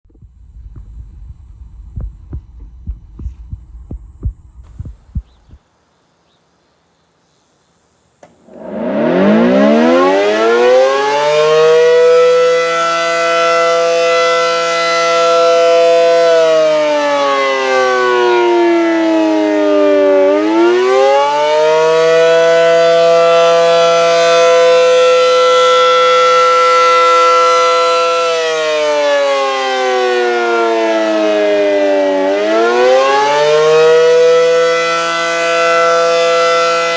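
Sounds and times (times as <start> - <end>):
low thumps: 0.1 - 5.6
warning siren rising and falling: 8.2 - 36.9.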